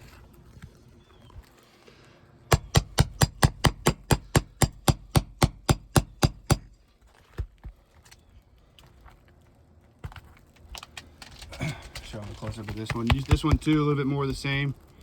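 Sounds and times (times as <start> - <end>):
hammer striking nail puller: 2.5 - 6.7.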